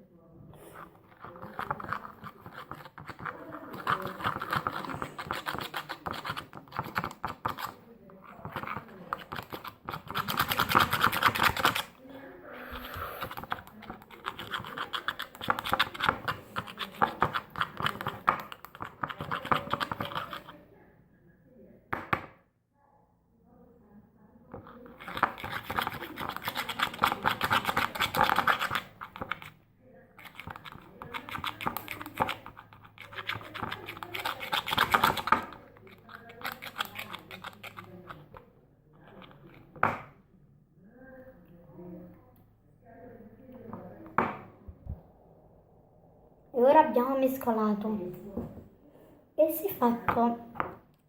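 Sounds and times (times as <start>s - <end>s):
slime being stirred: 0.5s - 20.6s, 24.6s - 40.2s
utensil clicking and scraping bowl: 0.5s - 20.6s, 24.5s - 29.6s, 30.2s - 40.2s.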